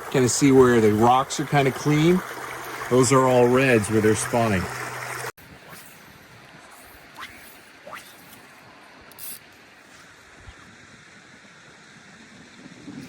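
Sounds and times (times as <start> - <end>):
creek water flowing: 0.0 - 13.0
brief hiss: 6.7 - 10.2
wind on microphone: 10.3 - 13.0.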